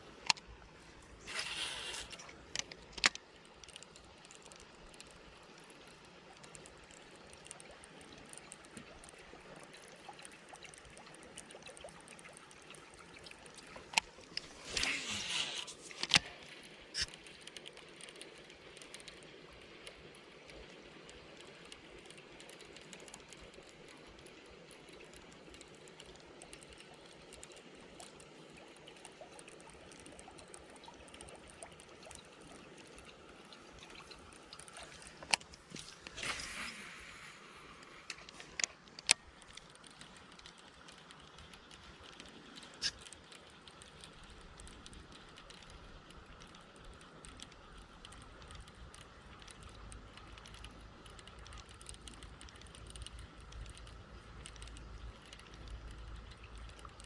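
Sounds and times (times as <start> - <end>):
creek water trickling: 0.0 - 57.0
sharp clicks: 37.8 - 57.0.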